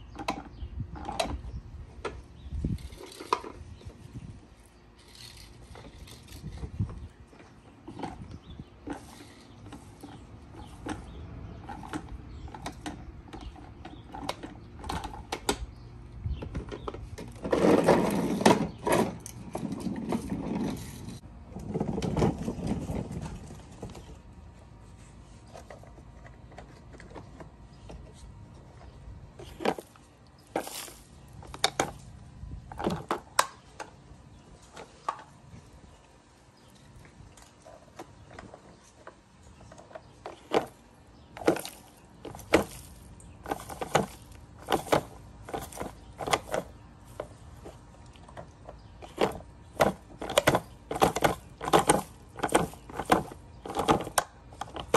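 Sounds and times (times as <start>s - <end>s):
plastic toy rattling: 2.6s - 3.7s, 5.0s - 7.0s, 39.7s - 54.9s.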